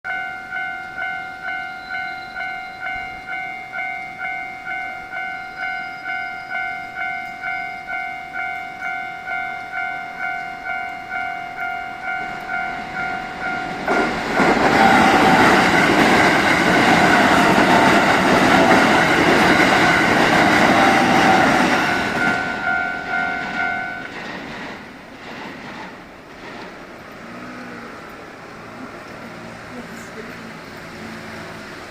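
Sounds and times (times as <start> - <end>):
level crossing warning bell: 0.1 - 24.2
train passing at speed: 0.1 - 31.9.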